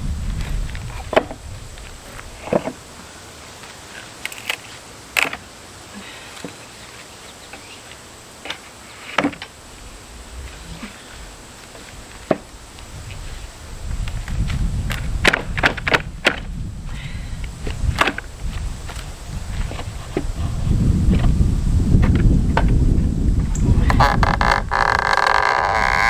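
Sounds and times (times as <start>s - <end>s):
wooden boards cracking and knocking: 11.8s - 12.5s, 14.9s - 16.5s, 17.9s - 18.3s, 23.9s - 26.0s.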